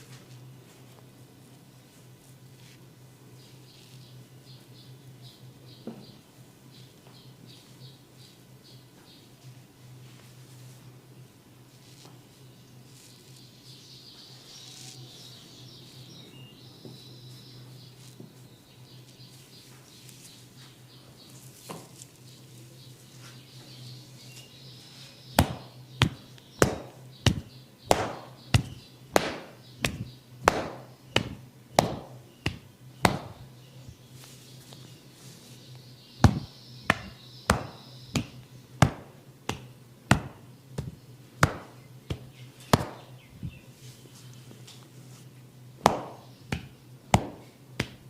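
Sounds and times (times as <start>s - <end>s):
percussive massage taps: 25.4s - 33.5s, 36.2s - 43.0s, 45.8s - 48.0s.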